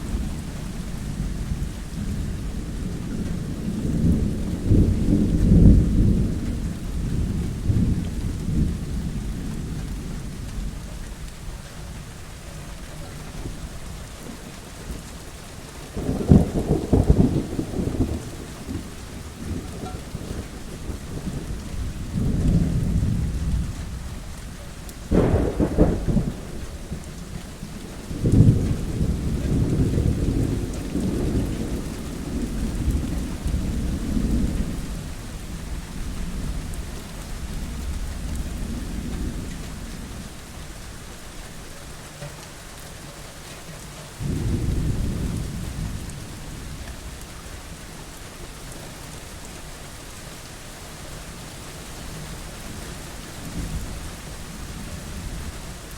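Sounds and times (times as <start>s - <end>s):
rolling thunder rumble: 0.0s - 12.3s, 16.0s - 41.0s, 44.2s - 48.0s
steady rain: 0.0s - 55.9s
thunder crack: 25.1s - 27.0s.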